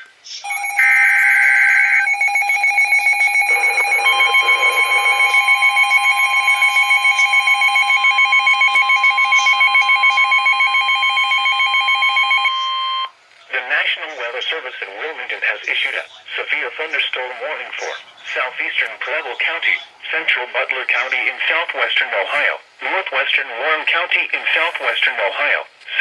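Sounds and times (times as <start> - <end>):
digital data screech: 0.4 - 12.7
pulsing electronic alert tone: 0.4 - 13.0
steady alarm tone: 0.4 - 13.1.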